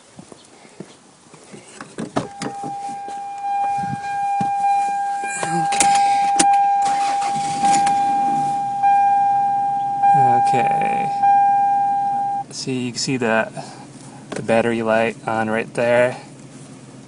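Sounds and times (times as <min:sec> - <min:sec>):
car warning buzzer: 0:02.2 - 0:12.4.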